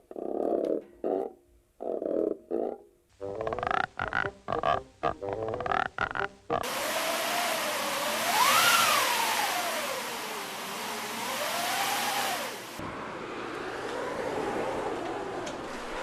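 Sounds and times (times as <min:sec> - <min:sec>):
howling storm wind: 0:08.1 - 0:16.0.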